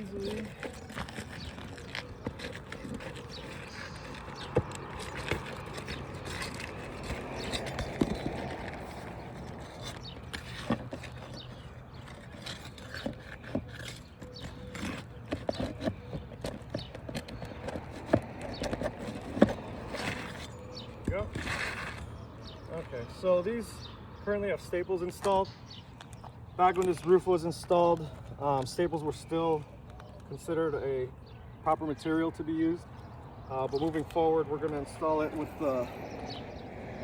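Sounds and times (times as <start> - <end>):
pry bar scraping shingles: 0.0 - 22.6.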